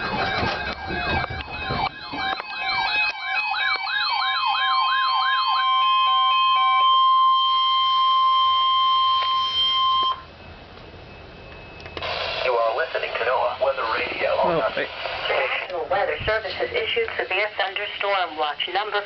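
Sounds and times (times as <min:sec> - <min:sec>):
warbling siren-like tone: 0:00.0 - 0:12.4
steady warning tone: 0:00.0 - 0:15.4.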